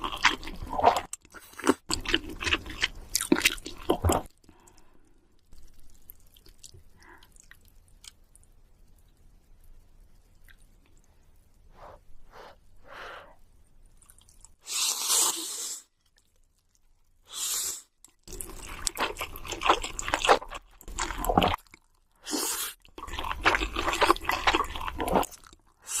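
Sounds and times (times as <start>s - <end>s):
crispy fried chicken crunching: 18.3s - 22.0s, 23.0s - 25.7s.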